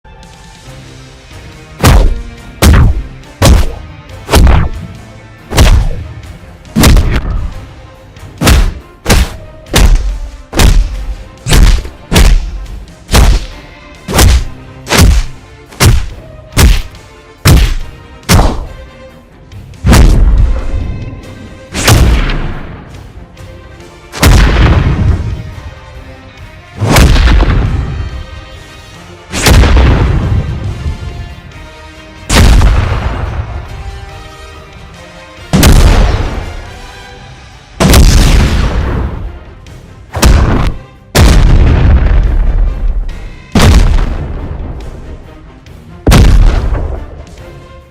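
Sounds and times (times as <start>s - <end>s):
cinematic punch impacts: 1.8s - 4.8s, 5.5s - 6.0s, 6.8s - 7.4s, 8.4s - 13.5s, 14.1s - 18.7s, 19.8s - 20.7s, 21.7s - 22.8s, 24.2s - 25.3s, 26.8s - 27.8s, 29.4s - 30.5s, 32.3s - 33.3s, 35.5s - 36.4s, 37.8s - 39.1s, 40.2s - 42.7s, 43.6s - 44.4s, 46.1s - 47.0s.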